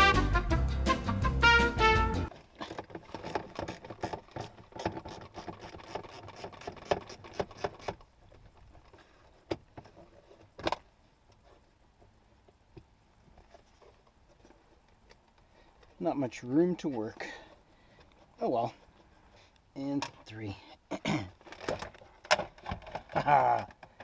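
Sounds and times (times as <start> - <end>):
metal parts rattling and clicking: 21.3 - 24.0.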